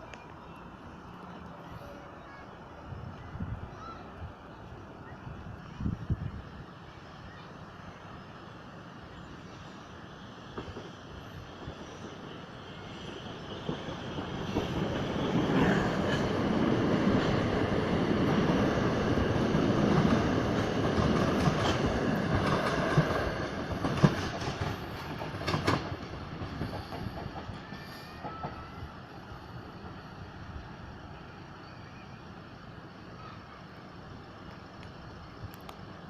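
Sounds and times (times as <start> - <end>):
train wheels clattering over rails: 13.0 - 28.8.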